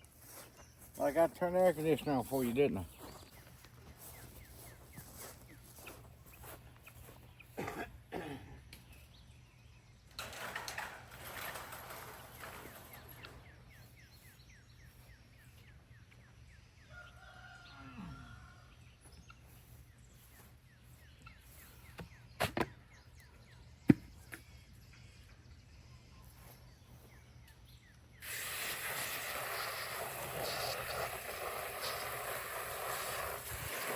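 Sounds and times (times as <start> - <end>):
distant rooster crowing: 16.8 - 18.9.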